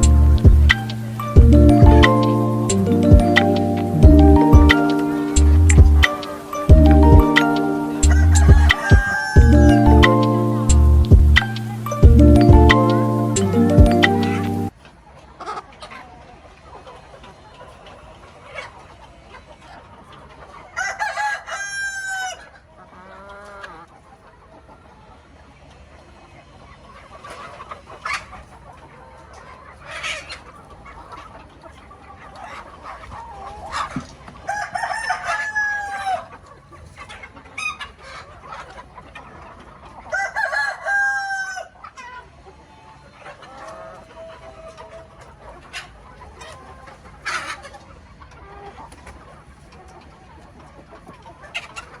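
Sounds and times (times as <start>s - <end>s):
chickens clucking: 0.0s - 52.0s
rooster crowing: 8.0s - 10.2s, 40.1s - 41.7s.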